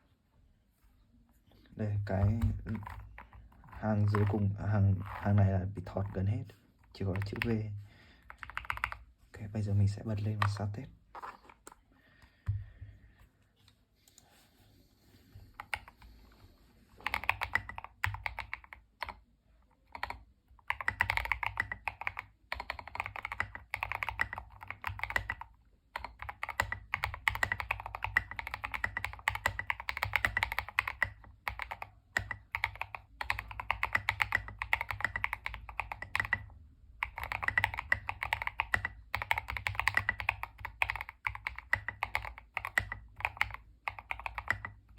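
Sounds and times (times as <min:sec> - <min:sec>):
mechanical keyboard typing: 0:02.1 - 0:06.3, 0:07.0 - 0:07.6, 0:08.2 - 0:09.1, 0:15.6 - 0:16.1, 0:17.0 - 0:19.2, 0:19.8 - 0:44.9.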